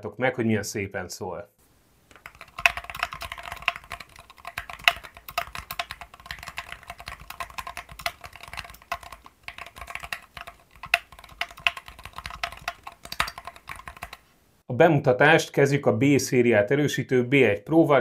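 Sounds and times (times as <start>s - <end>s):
mechanical keyboard typing: 2.1s - 14.3s.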